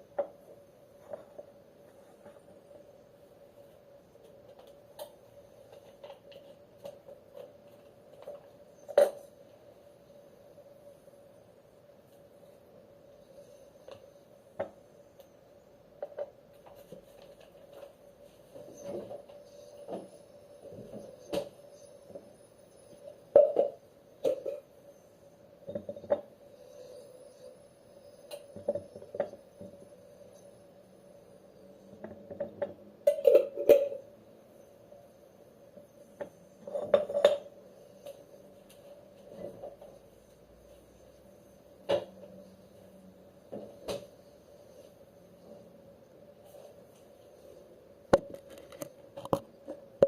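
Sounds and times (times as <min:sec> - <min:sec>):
faint steady hum: 0:00.0 - 0:50.0
objects knocking and clattering: 0:23.3 - 0:24.7, 0:25.6 - 0:26.3, 0:28.5 - 0:29.8, 0:32.0 - 0:34.1, 0:36.2 - 0:37.6.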